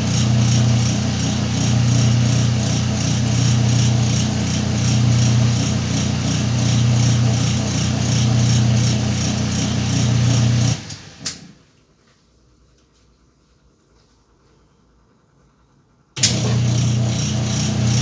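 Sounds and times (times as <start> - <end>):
washing machine running: 0.0 - 11.6, 16.2 - 18.0.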